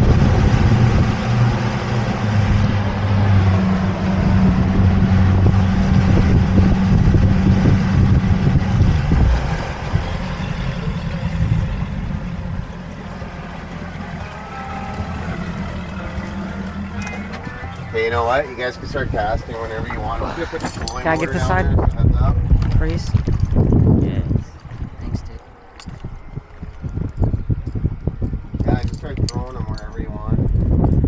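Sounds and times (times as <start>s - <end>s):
boat motor running: 0.0s - 31.0s
wind: 0.0s - 31.0s
water noise: 0.1s - 31.0s.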